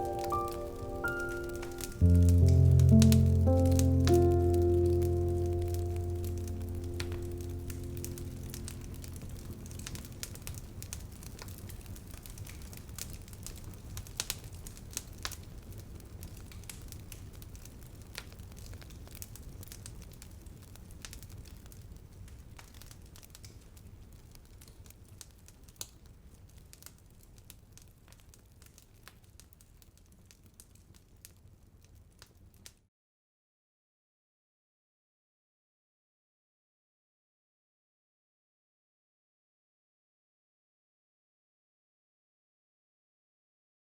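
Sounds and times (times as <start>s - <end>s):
soft crackles and clicks: 0.0s - 32.8s.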